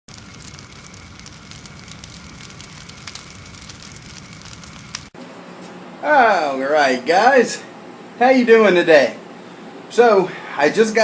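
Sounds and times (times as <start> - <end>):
fire crackling: 0.1 - 5.2
forge fire rumbling: 0.1 - 5.2.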